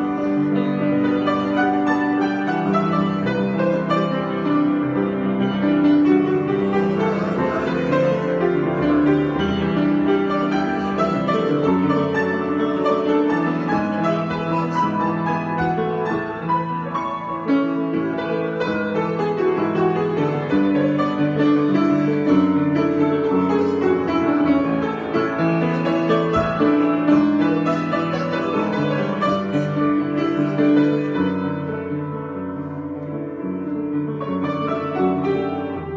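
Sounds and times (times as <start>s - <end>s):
improvised piano music: 0.0s - 35.9s.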